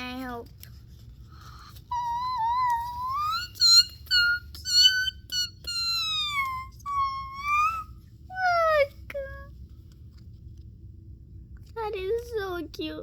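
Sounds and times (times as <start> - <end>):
girl's sliding squeals: 1.9 - 7.9.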